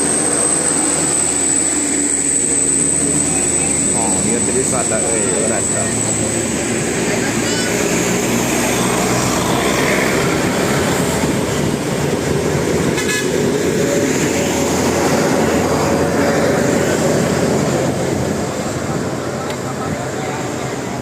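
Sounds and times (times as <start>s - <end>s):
road traffic noise: 0.0s - 21.0s
bus horn melody: 13.0s - 13.5s.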